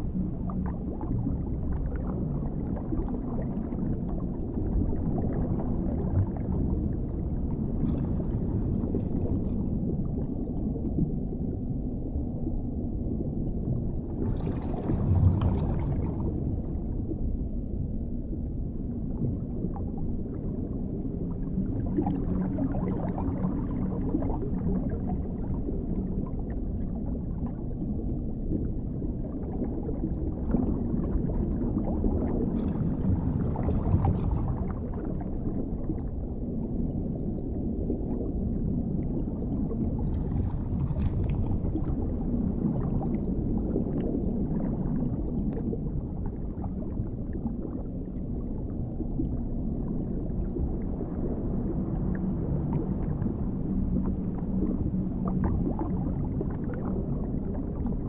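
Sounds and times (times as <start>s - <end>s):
deep muffled underwater rumble: 0.0s - 58.0s.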